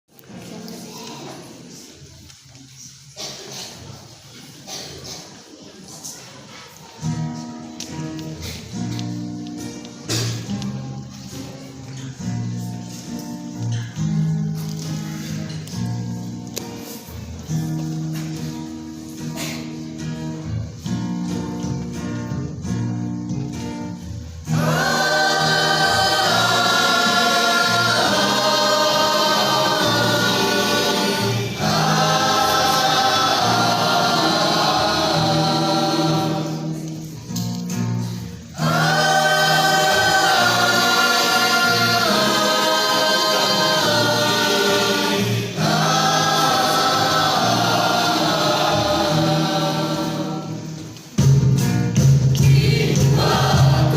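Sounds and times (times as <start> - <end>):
instrumental accompaniment: 7.2 - 53.9
church choir singing: 23.9 - 51.2, 52.3 - 53.9.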